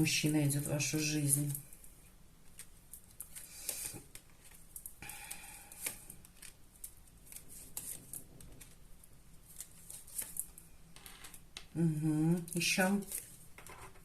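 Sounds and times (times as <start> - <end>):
cards rustling and tapping: 2.4 - 10.6.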